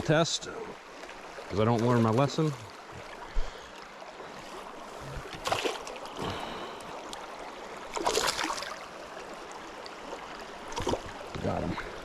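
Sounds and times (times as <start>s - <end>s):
river water running: 0.0s - 12.0s
fish splashing at surface: 5.4s - 5.9s, 7.9s - 8.8s.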